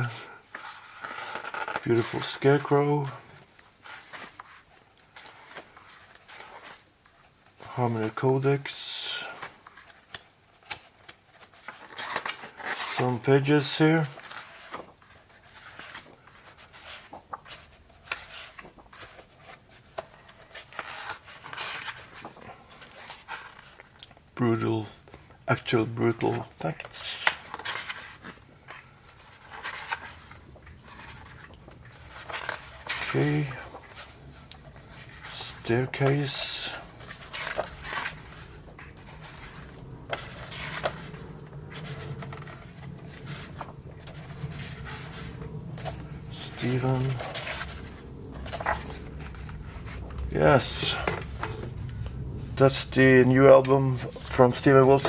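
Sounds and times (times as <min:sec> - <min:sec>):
paper pages rustling: 0:00.0 - 0:55.0
steady low hum: 0:28.5 - 0:55.0.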